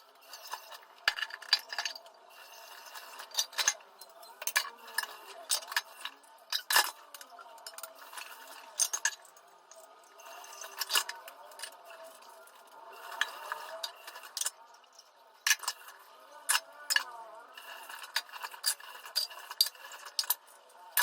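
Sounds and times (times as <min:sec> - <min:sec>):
dishes and utensils clinking: 0:00.3 - 0:11.8.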